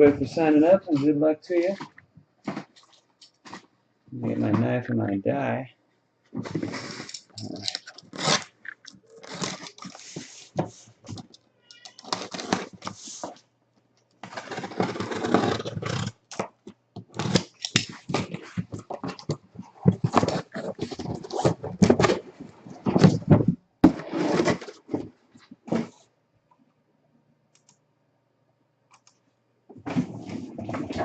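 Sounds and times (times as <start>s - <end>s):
plastic wrap crackling rustles: 6.4s - 13.4s, 17.0s - 23.4s
knife cutting shrink wrap: 6.6s - 8.6s, 9.2s - 10.4s, 12.0s - 13.2s, 14.2s - 16.2s, 17.1s - 18.3s.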